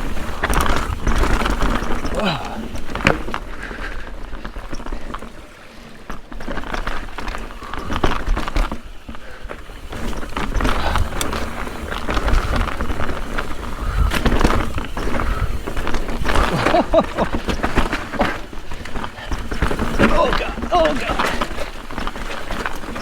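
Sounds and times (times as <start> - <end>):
bike rattling: 0.0 - 23.0
bike tyres clattering over rocks: 0.0 - 23.0
wind rumble on microphone: 7.5 - 20.7.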